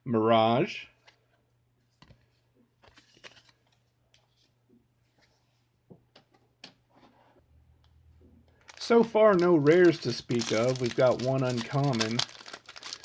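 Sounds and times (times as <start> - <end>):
trading cards clicking and rustling: 2.0 - 4.5, 8.6 - 13.0.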